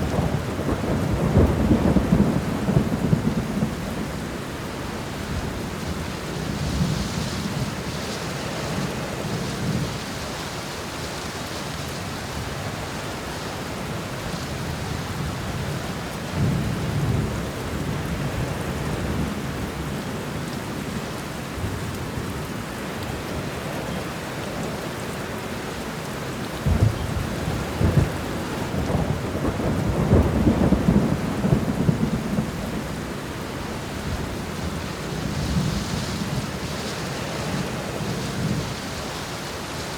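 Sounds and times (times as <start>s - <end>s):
thunder rumbling: 0.0s - 9.9s, 26.5s - 39.2s
steady rain: 0.0s - 39.9s.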